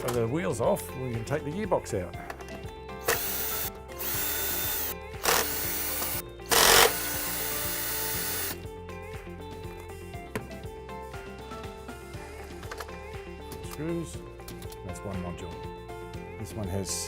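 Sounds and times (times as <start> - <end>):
background music: 0.0 - 17.0
power screwdriver running: 3.0 - 8.6.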